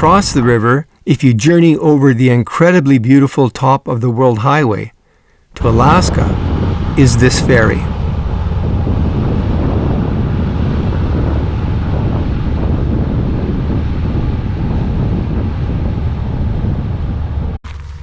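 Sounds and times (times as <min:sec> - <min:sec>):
wind buffeting microphone: 0:05.6 - 0:17.6.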